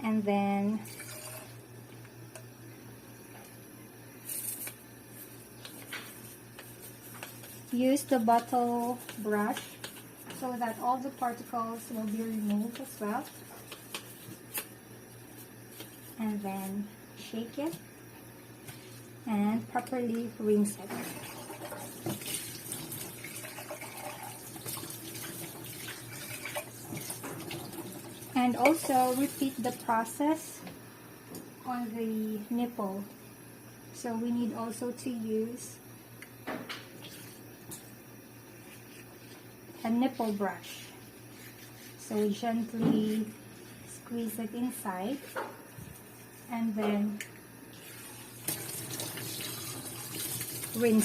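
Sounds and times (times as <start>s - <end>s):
steady low hum: 0.0s - 21.8s, 26.0s - 48.4s
tap water running: 0.8s - 1.6s, 20.8s - 29.9s, 47.7s - 51.0s.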